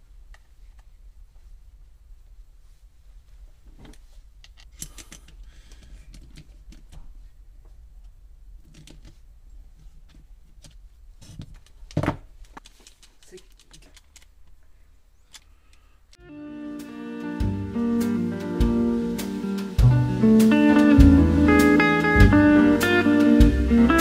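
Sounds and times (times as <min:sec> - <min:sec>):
low steady hum: 0:00.0 - 0:24.0
small parts clicking and rattling: 0:04.4 - 0:07.0, 0:08.6 - 0:09.2, 0:11.5 - 0:14.6.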